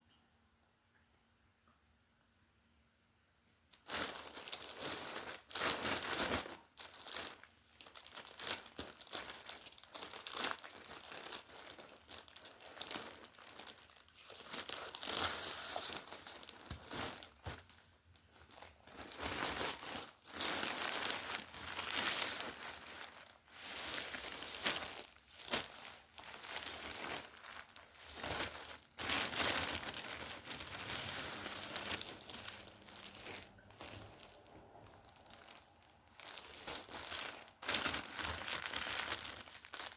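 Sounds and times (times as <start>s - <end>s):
packaging crinkling and tearing: 3.7s - 39.9s.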